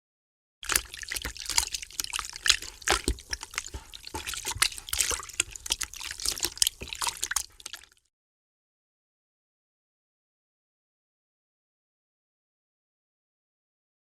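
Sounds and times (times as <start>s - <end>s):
water splashing and dripping: 0.6s - 8.1s.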